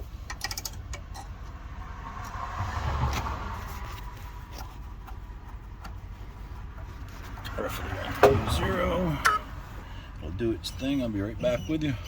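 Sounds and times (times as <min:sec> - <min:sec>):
vehicle passing by: 0:01.5 - 0:05.4, 0:06.9 - 0:10.1.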